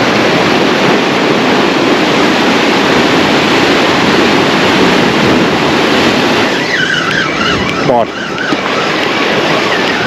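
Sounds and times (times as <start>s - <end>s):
surf washing against rocks: 0.0s - 10.0s.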